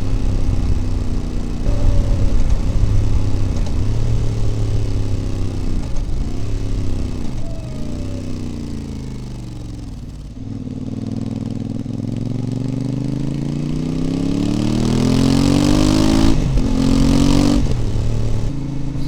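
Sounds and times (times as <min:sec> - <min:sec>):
motorcycle exhaust accelerating: 0:00.0 - 0:19.0.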